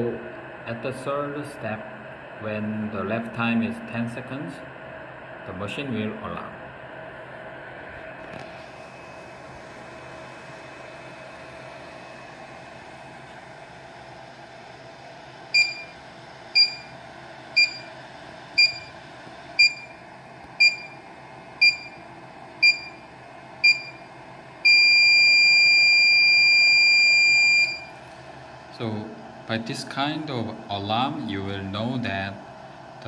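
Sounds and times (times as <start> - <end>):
steady low hum: 0.0 - 33.0
long continuous beep: 15.6 - 16.0, 16.6 - 17.0, 17.6 - 18.0, 18.6 - 19.0, 19.6 - 20.0, 20.6 - 21.0, 21.6 - 22.0, 22.6 - 23.0, 23.6 - 28.0
short high alarm beeps: 15.6 - 16.0, 16.6 - 16.9, 17.6 - 17.9, 18.6 - 18.9, 19.6 - 20.0, 20.6 - 21.0, 21.6 - 22.0, 22.6 - 23.0, 23.6 - 24.0, 24.7 - 27.9.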